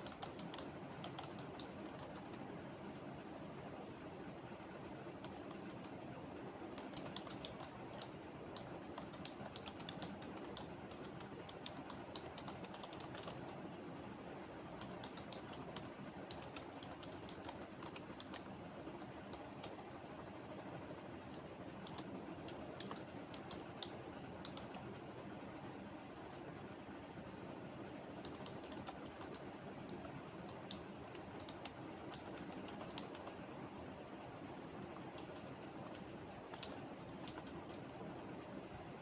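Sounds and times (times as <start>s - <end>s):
computer keyboard typing: 0.0s - 2.5s, 5.1s - 13.6s, 14.7s - 20.0s, 21.3s - 25.0s, 28.1s - 33.5s, 34.8s - 37.9s
low background hum: 0.0s - 39.0s.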